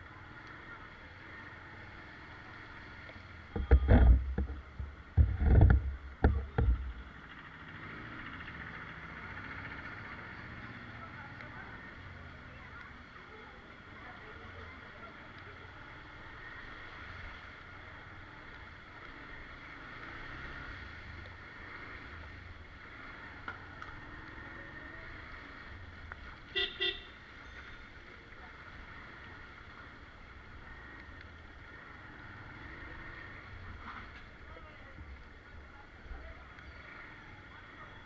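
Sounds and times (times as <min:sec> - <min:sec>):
street background noise: 0:00.0 - 0:38.0
vehicle horn beeps: 0:26.5 - 0:27.6.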